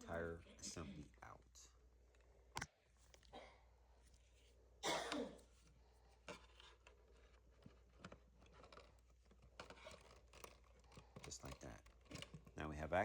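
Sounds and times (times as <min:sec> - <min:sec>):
person coughing: 0:04.8 - 0:05.4.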